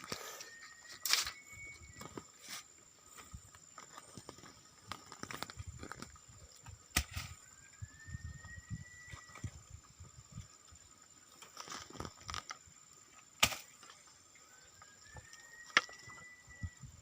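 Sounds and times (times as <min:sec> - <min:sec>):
faint rising whistle: 0:00.0 - 0:02.7, 0:07.1 - 0:09.8, 0:14.4 - 0:17.0
high-pitched night drone: 0:00.0 - 0:03.3, 0:06.9 - 0:10.4, 0:13.0 - 0:17.0
dry rustling and crackling: 0:01.0 - 0:06.8, 0:11.3 - 0:12.6.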